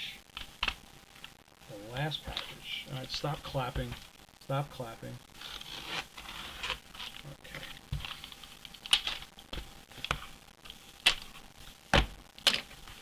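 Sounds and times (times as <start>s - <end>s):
cardboard and tape rustling: 5.4s - 10.3s.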